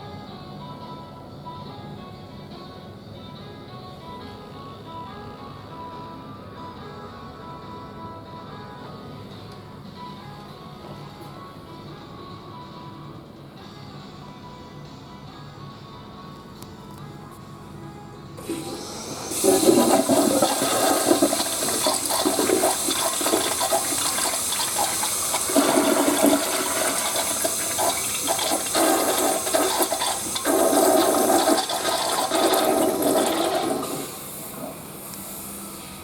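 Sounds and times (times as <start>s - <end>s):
toilet flushing: 18.4s - 36.0s.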